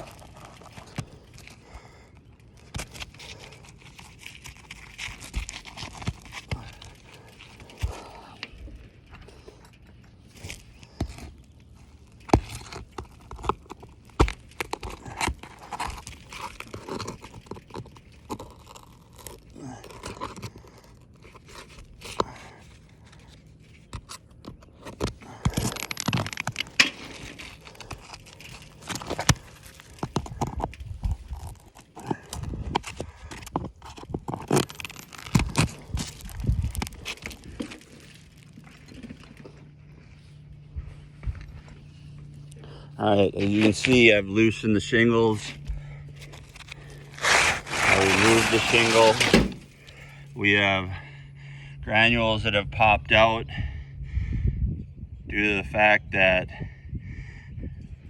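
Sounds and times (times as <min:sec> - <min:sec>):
shingle crunching and scraping: 0:00.0 - 0:53.3
shingles clicking and knocking: 0:23.1 - 0:39.6, 0:45.4 - 0:50.1.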